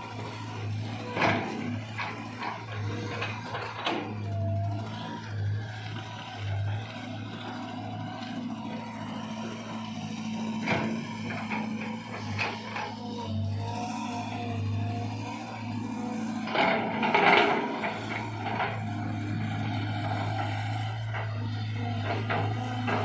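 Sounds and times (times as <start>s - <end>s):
excavator diesel engine running: 0.0s - 23.0s.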